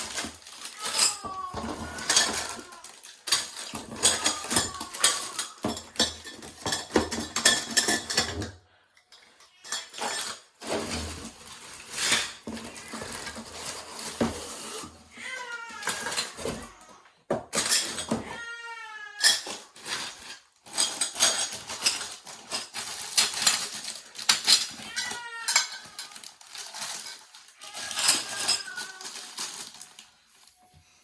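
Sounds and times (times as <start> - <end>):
metal rack parts clattering: 0.0 - 8.6, 9.7 - 14.8, 17.5 - 18.2, 19.2 - 29.8
cat meowing: 0.7 - 3.0, 15.1 - 17.0, 24.8 - 26.3, 27.6 - 29.3.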